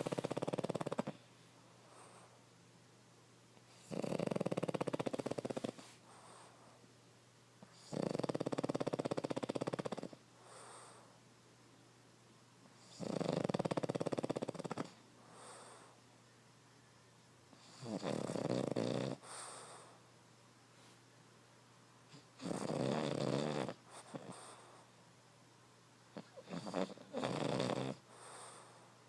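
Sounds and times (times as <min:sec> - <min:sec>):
dog snoring: 0:00.0 - 0:01.2, 0:03.6 - 0:06.8, 0:07.6 - 0:11.1, 0:12.8 - 0:16.0, 0:17.5 - 0:20.0, 0:22.1 - 0:24.9, 0:26.1 - 0:28.9.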